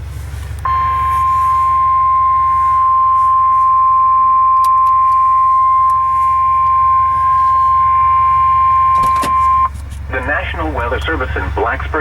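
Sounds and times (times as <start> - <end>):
low rumble: 0.0 - 12.0
loud steady alarm tone: 0.7 - 9.7.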